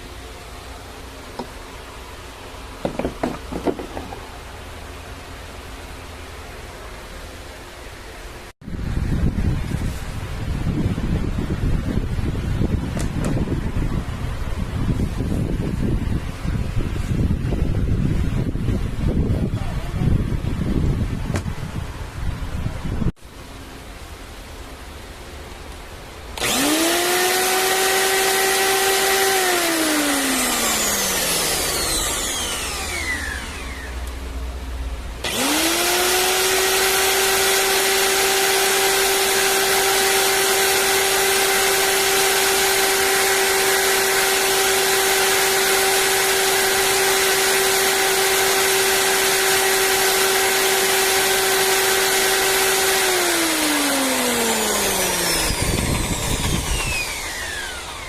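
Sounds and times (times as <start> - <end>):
machine motor whining: 26.4 - 34.2, 35.2 - 58.0.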